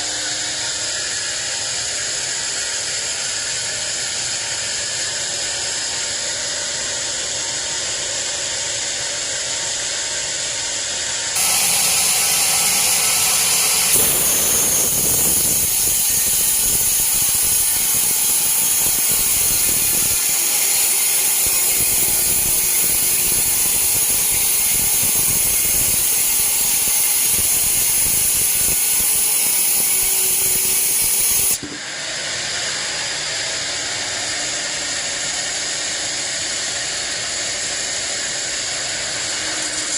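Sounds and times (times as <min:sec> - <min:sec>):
band saw cutting log: 0:11.4 - 0:31.8.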